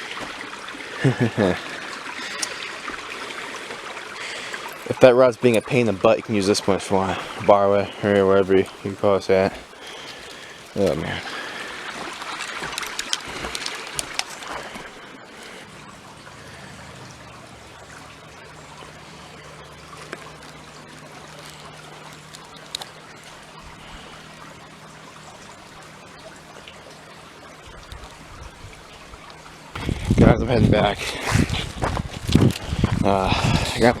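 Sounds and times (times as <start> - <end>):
brook trickling: 0.0 - 34.0
sharp clicks: 12.1 - 14.9.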